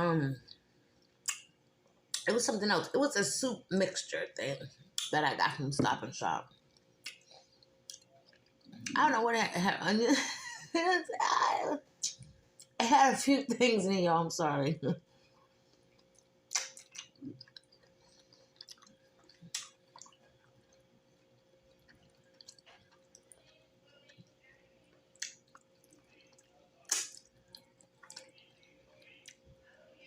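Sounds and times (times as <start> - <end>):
wet chewing and lip smacking: 0.4 - 2.3, 6.4 - 9.0, 15.2 - 29.7.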